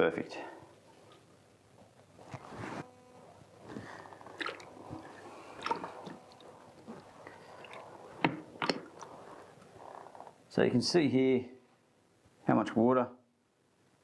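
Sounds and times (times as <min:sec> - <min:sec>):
wet laundry squelching: 0:02.0 - 0:10.6.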